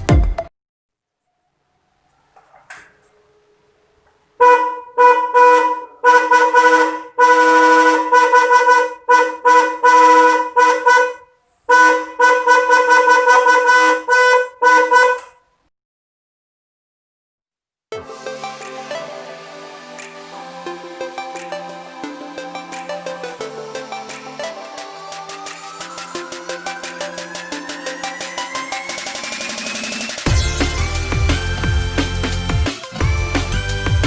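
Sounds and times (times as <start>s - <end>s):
motorcycle horn honking: 4.4s - 15.4s.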